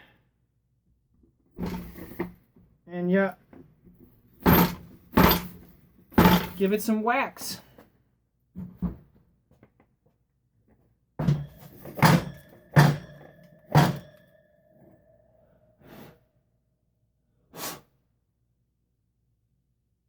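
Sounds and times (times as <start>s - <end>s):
pipe knocking on seal: 11.2s - 14.1s
ringing tone: 11.4s - 15.8s.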